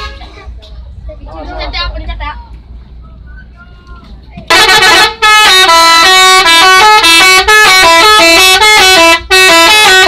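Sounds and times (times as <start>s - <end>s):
multi-note air horn tune: 4.5s - 10.0s.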